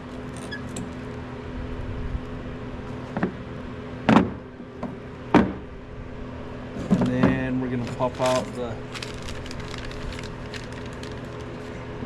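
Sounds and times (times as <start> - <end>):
low mechanical hum: 0.0 - 12.0
brake parts clacking: 6.8 - 9.4.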